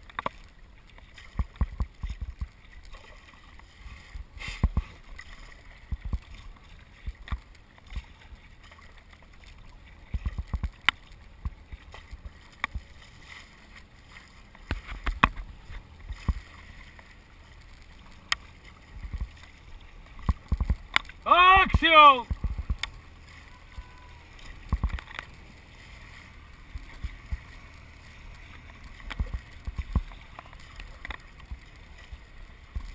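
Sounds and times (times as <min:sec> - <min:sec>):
paddle splashes: 0:00.0 - 0:32.9
water washing: 0:18.6 - 0:30.8.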